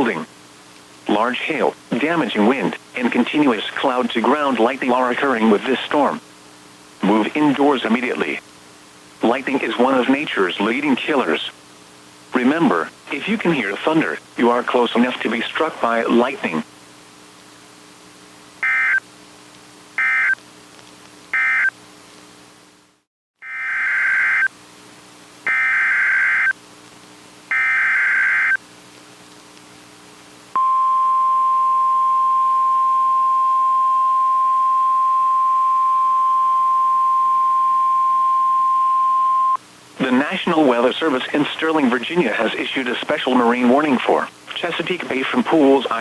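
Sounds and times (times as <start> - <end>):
single-pitch warning alarm tone: 18.6 - 19.0, 20.0 - 20.4, 21.4 - 21.7, 23.4 - 24.5, 25.5 - 26.5, 27.5 - 28.6, 30.6 - 39.6
digital data bursts: 27.5 - 28.6.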